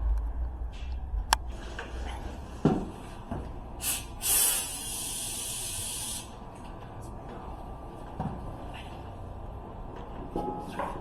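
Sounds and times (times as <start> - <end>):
pressurised gas hissing: 3.8 - 6.4.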